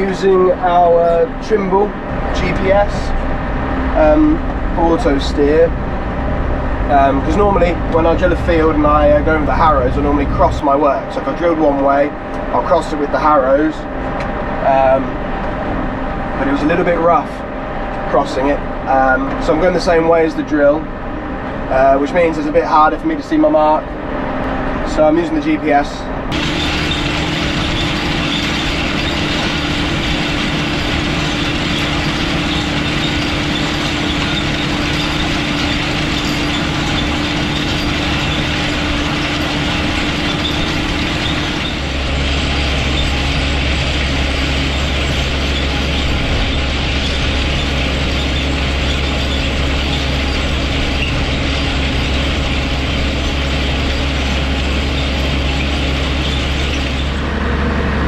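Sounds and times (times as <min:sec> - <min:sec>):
deep low drone: 0:00.0 - 0:23.0, 0:26.0 - 0:58.0
tractor engine running: 0:00.0 - 0:25.0, 0:26.1 - 0:58.0
mechanical rattle: 0:26.3 - 0:57.3.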